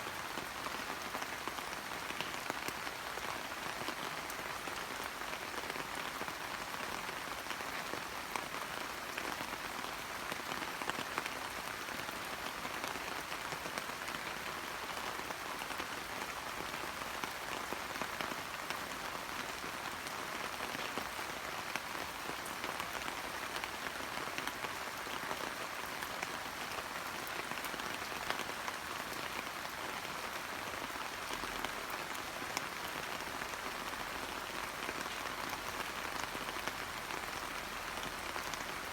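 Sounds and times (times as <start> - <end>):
rain on leaves: 0.0 - 38.9.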